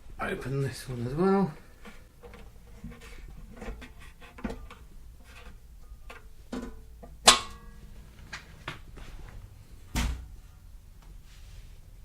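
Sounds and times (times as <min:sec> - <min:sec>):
metallic clunk with ring: 0:06.6 - 0:07.9.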